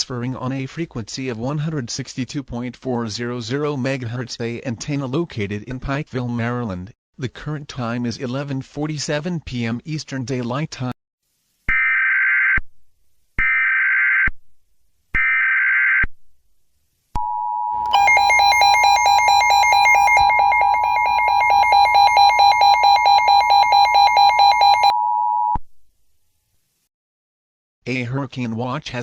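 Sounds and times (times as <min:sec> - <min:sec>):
rapidly pulsing alarm: 0:17.8 - 0:24.9
steady alert tone: 0:17.8 - 0:24.9
screeching data bursts: 0:17.9 - 0:24.9.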